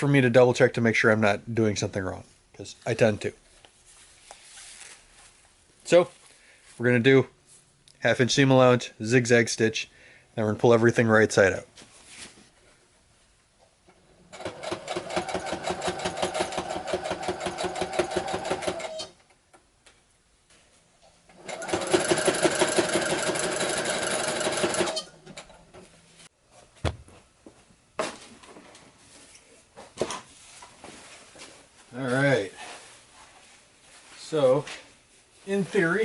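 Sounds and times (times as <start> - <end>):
sewing machine stitching: 14.3 - 19.2, 21.3 - 25.5.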